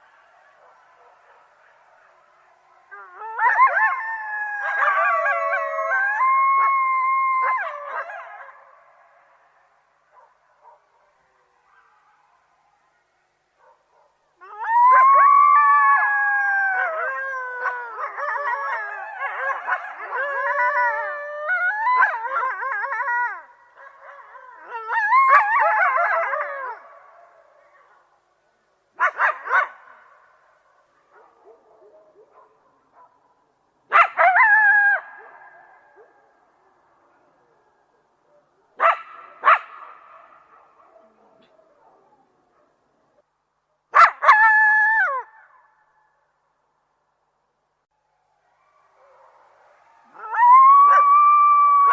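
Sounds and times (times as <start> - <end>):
coyotes howling and yipping: 0.0 - 28.1, 33.9 - 42.8, 48.4 - 51.9.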